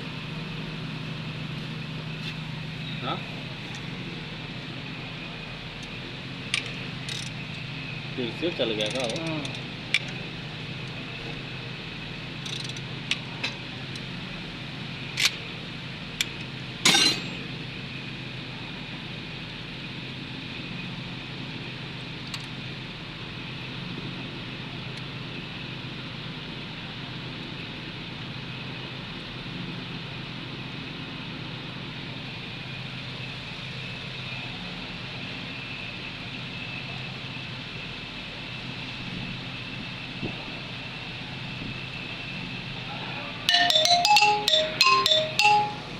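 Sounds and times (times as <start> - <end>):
engine running: 0.0 - 45.9
high chain whine: 16.3 - 17.6, 43.4 - 45.9
sharp metallic clinks: 16.9 - 17.4, 43.5 - 45.9.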